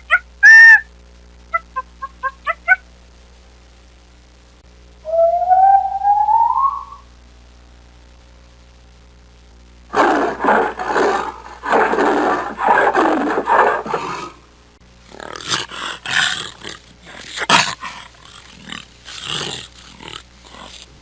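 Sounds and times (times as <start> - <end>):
wild animal roaring: 9.9 - 14.4, 15.1 - 20.9.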